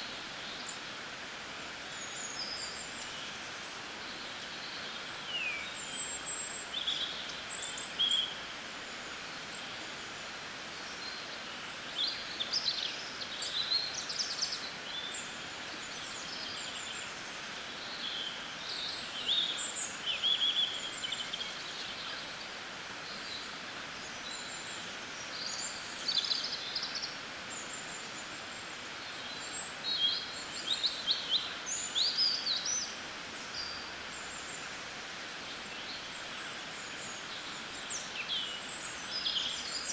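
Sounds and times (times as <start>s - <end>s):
outdoor background hiss: 0.0s - 39.9s
songbirds chirping and warbling: 9.3s - 39.9s.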